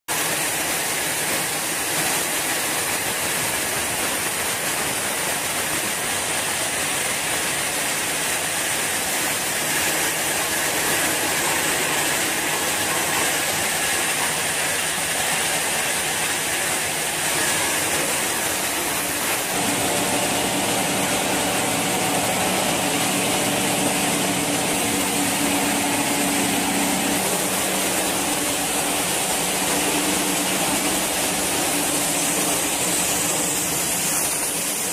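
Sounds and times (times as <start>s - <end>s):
steady multi-tone hum: 4.9s - 34.9s.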